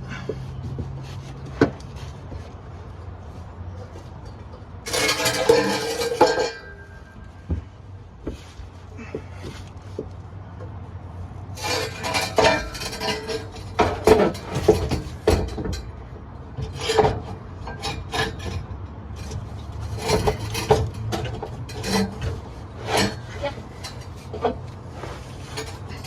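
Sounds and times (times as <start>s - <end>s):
metal clinking and scraping: 1.0s - 7.8s, 11.5s - 26.0s.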